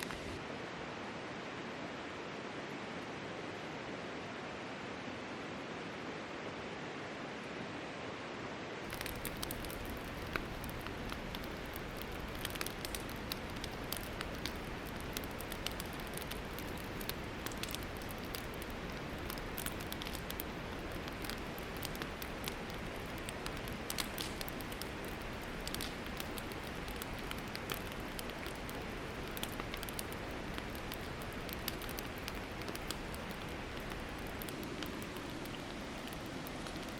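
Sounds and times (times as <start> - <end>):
campfire crackling: 0.0 - 0.4, 8.8 - 36.9.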